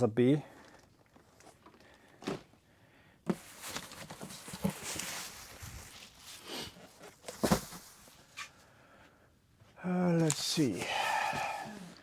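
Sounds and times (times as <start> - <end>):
cardboard rustling and scraping: 3.3 - 8.5.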